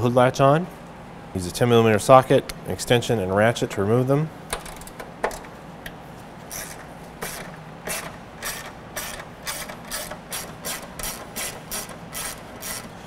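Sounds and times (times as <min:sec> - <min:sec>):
ratchet wrench clicking: 0:06.5 - 0:13.0.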